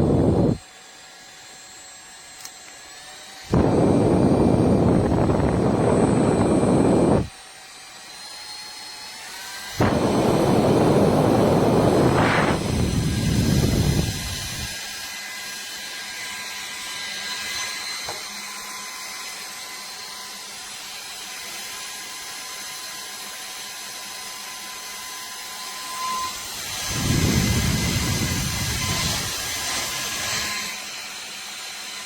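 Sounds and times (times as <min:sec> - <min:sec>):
air blowing on microphone: 0:00.0 - 0:00.6, 0:03.5 - 0:07.3, 0:09.8 - 0:14.7, 0:26.8 - 0:29.4
small fan motor whining: 0:00.0 - 0:32.0.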